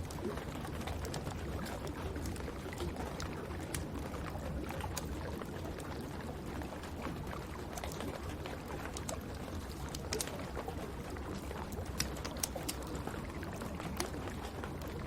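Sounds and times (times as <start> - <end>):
wood fire crackling: 8.7 - 15.0.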